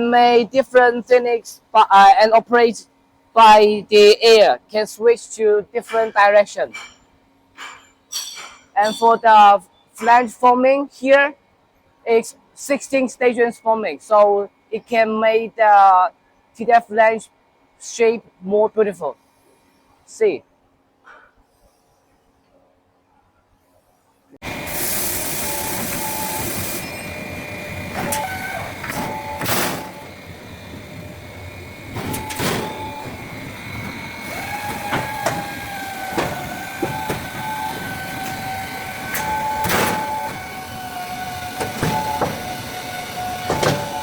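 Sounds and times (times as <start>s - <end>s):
metallic clanks and knocks: 5.8s - 9.2s, 31.2s - 40.4s
machine steady whine: 23.1s - 44.0s.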